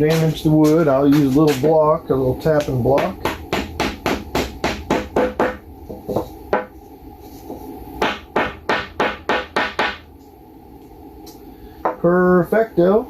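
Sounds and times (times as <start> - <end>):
hammer tapping on wooden block: 2.6 - 5.6, 8.0 - 10.0.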